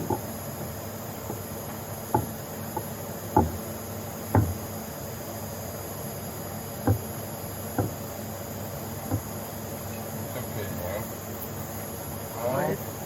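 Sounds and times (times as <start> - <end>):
short dull knocks: 0.0 - 0.3, 1.2 - 4.8, 6.8 - 8.1, 9.0 - 9.4
steady background hiss: 0.0 - 13.0.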